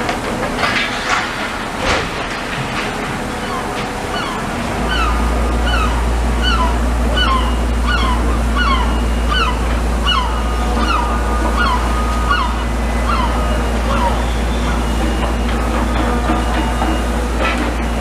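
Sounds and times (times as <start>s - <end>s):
gull calling: 3.4s - 15.0s.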